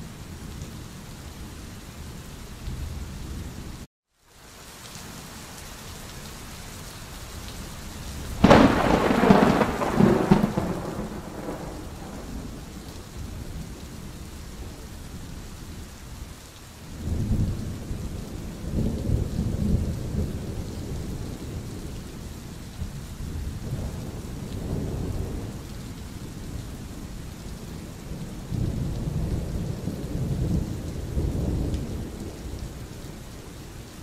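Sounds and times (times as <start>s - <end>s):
steady rain: 0.0s - 34.0s
thunder rumble: 8.4s - 14.9s.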